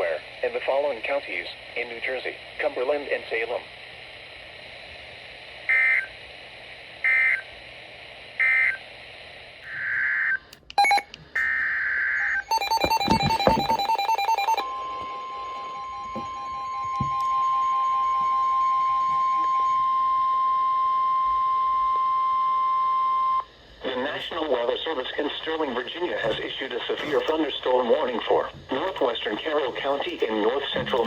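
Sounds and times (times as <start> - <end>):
screeching digital data bursts: 26.7 - 31.0.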